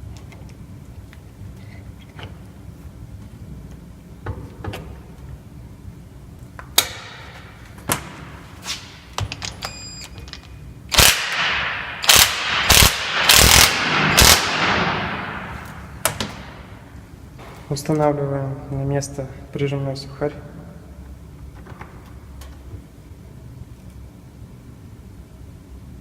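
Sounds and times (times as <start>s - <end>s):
short rattling bursts: 10.9s - 15.4s.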